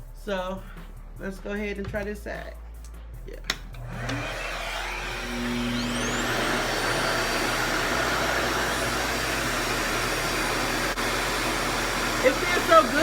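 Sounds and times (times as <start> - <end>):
hair dryer motor whine: 3.7 - 13.0.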